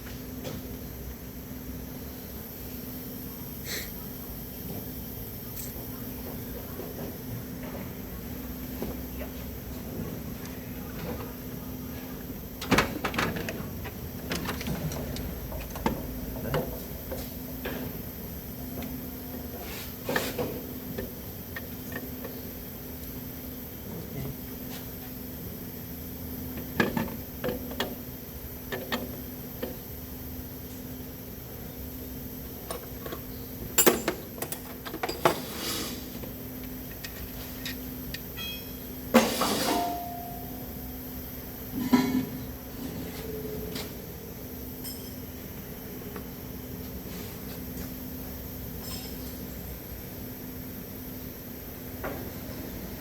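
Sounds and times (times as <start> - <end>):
faint steady hum: 36.0 - 53.0
metal tools clinking on car parts: 38.4 - 40.1, 48.8 - 49.3.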